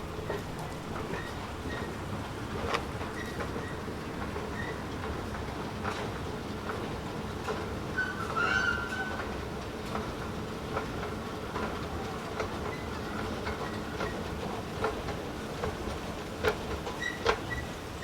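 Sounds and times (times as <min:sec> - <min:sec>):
sharp clack of escalator: 0:00.0 - 0:18.0
faint squeak: 0:08.0 - 0:09.3.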